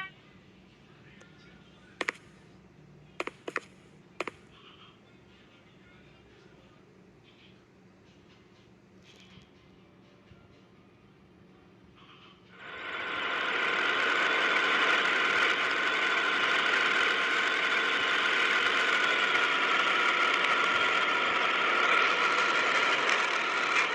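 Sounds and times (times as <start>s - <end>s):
machine whining: 12.4s - 23.9s.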